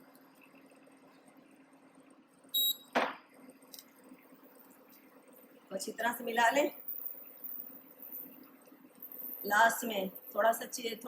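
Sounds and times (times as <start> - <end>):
short high electronic beep: 2.6 - 2.8.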